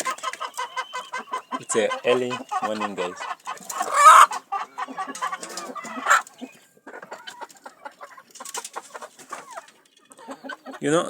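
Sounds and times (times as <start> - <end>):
chickens clucking: 0.0 - 11.0.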